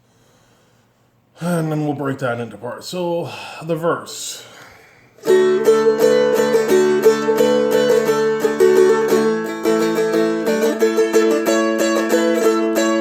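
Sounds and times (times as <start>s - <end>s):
flatpicked dulcimer with drone strings: 5.2s - 13.0s.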